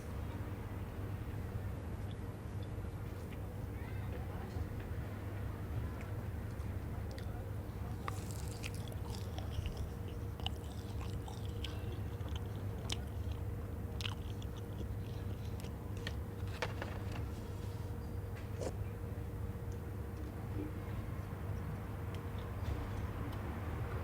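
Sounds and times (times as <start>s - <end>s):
steady low hum: 0.0s - 24.0s
person chewing crunchy snack: 6.0s - 16.5s, 18.6s - 18.8s.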